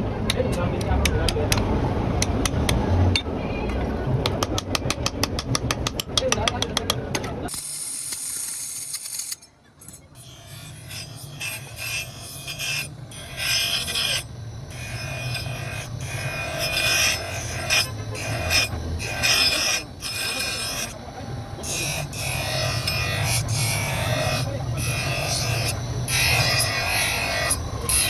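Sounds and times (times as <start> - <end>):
hand file scraping: 10.2 - 21.0, 21.6 - 28.0.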